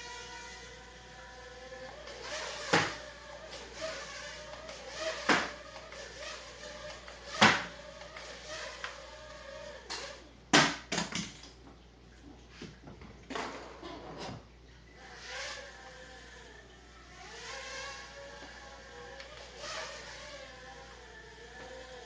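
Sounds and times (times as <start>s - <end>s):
drone motors whining: 0.0s - 10.3s, 14.9s - 22.0s.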